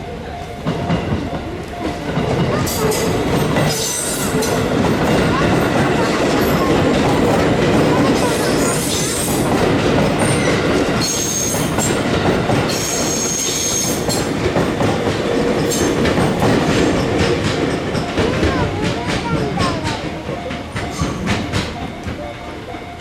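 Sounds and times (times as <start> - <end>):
electric train passing: 0.0 - 23.0.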